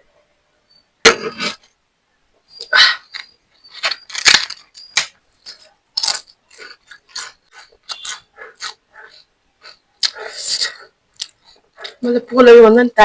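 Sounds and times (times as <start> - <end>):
crunching of crisp papad: 6.0 - 8.8.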